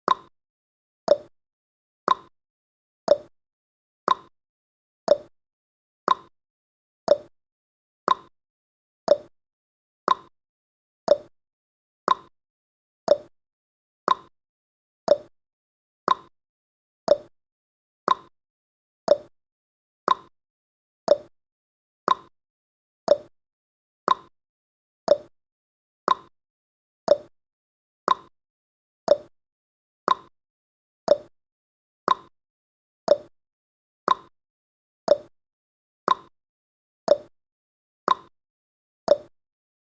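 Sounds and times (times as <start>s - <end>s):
clock ticking: 1.1s - 1.3s, 3.1s - 3.3s, 5.1s - 5.3s, 7.1s - 7.3s, 9.1s - 9.3s, 11.1s - 11.3s, 13.1s - 13.3s, 15.1s - 15.3s, 19.1s - 19.3s, 21.1s - 21.3s, 29.1s - 29.3s, 31.1s - 31.3s, 33.1s - 33.3s, 35.1s - 35.3s, 37.1s - 37.3s, 39.1s - 39.3s.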